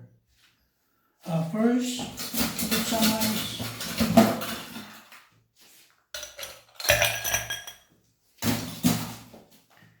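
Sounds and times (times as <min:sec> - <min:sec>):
ice cubes clinking in glass: 0:06.2 - 0:07.8.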